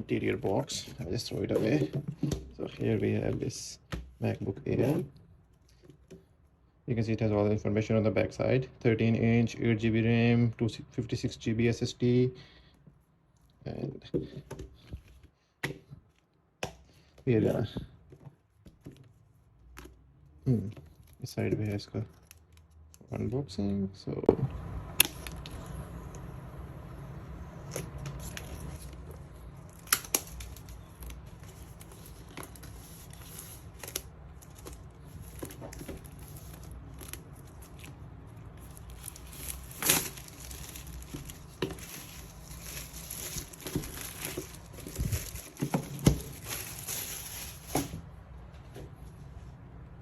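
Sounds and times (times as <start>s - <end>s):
paper crinkling: 27.7s - 48.0s
cardboard and paper tearing: 29.6s - 48.0s.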